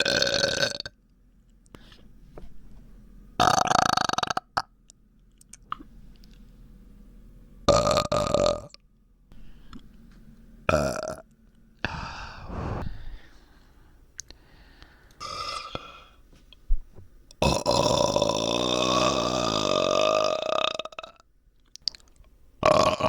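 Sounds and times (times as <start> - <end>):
person burping: 22.6 - 23.0.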